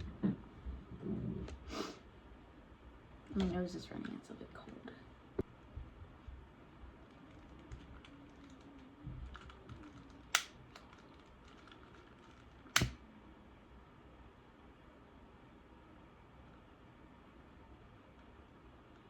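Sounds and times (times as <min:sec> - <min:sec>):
sharp loud clicks: 0:12.7 - 0:13.0.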